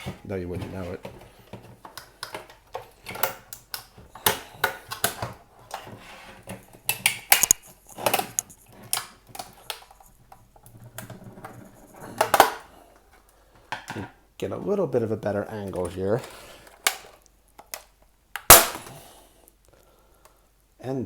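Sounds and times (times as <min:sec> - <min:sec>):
plastic housing clicking and snapping: 0:06.9 - 0:09.9.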